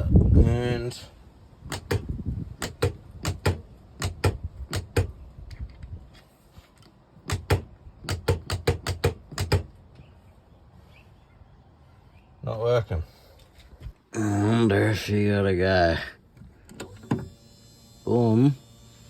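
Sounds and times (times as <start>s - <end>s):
sharp clicks and knocks: 1.7s - 5.9s, 6.8s - 9.8s.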